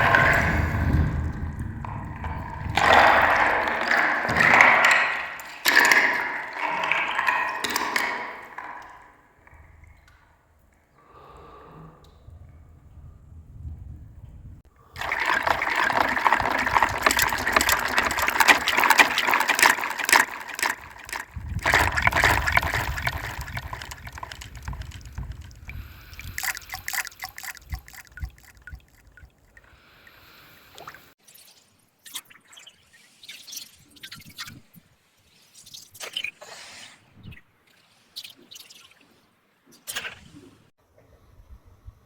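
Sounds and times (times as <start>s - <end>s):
water bubbling and sloshing: 0.0s - 10.9s, 14.7s - 31.2s
small drips and clicks: 0.0s - 11.0s, 14.9s - 34.6s.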